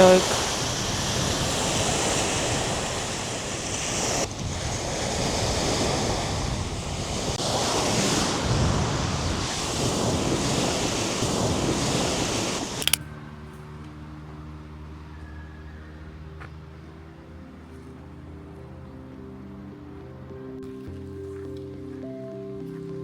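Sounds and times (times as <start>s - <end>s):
wind blowing across microphone: 0.0s - 12.8s.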